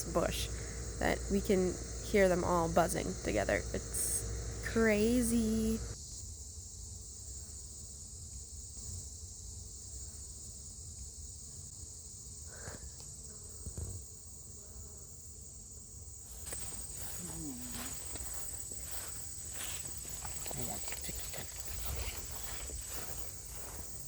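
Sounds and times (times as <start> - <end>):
insect chorus drone: 0.0 - 24.0
rustles or steps: 16.3 - 24.0.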